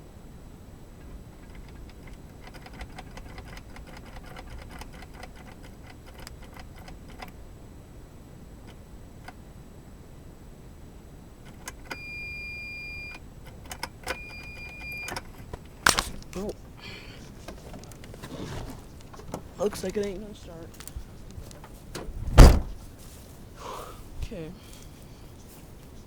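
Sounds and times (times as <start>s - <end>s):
car starter clicking rapidly: 1.0s - 7.4s, 11.4s - 22.8s
high electronic beeps: 11.9s - 13.2s, 14.2s - 15.1s.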